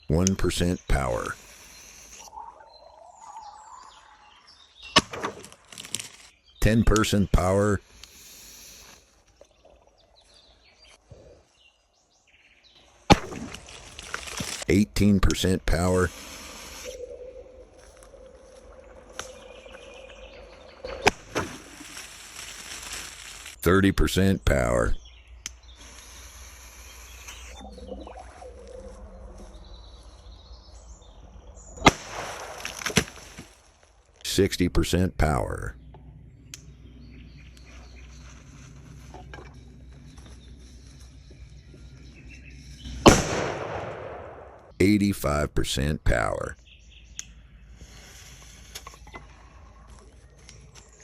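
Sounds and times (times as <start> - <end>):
faint bird chirps: 1.2 - 5.0, 25.0 - 31.8
small cracks: 5.0 - 6.3, 13.1 - 14.7, 21.0 - 23.6, 31.9 - 34.3
firecracker bang: 43.0 - 44.4.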